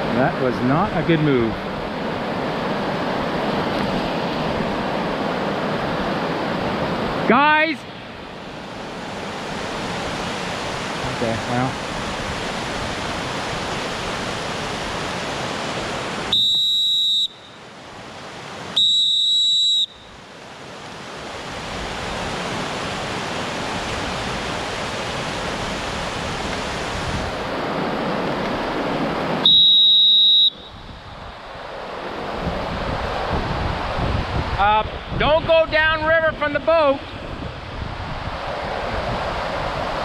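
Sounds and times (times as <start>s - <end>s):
whitewater rapid rushing: 0.0s - 30.7s
safety whistle blasts: 16.3s - 17.6s, 18.8s - 20.1s, 29.4s - 30.8s.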